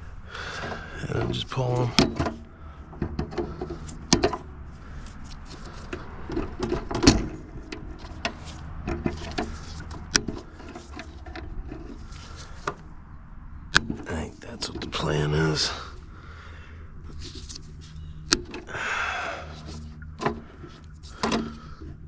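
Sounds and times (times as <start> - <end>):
clicks and rattles of wiring work: 0.5 - 12.8, 17.1 - 18.7, 19.5 - 22.0.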